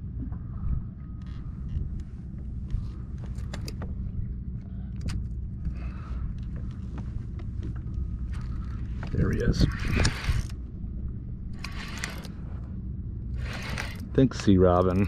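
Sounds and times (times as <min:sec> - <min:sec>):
wind rumble on microphone: 0:00.0 - 0:15.0
fishing rod and reel clicks: 0:08.3 - 0:10.6, 0:11.6 - 0:12.4, 0:13.3 - 0:15.0.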